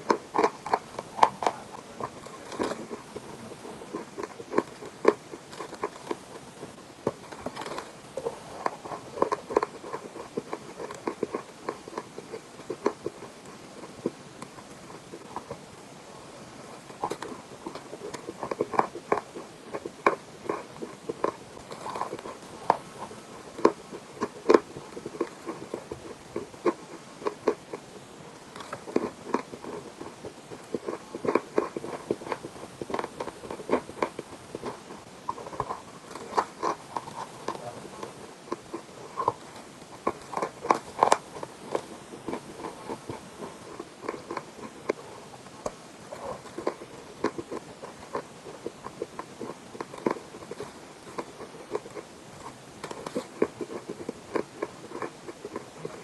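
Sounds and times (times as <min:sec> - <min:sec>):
chalk crunching while chewed: 0:00.0 - 0:56.0.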